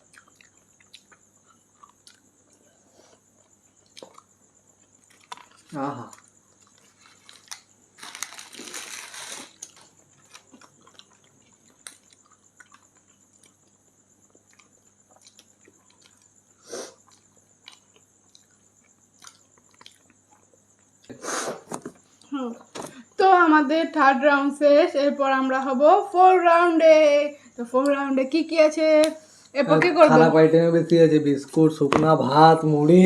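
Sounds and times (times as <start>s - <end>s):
people chewing and crunching: 0.0s - 22.7s
crunchy rustle: 5.0s - 12.5s.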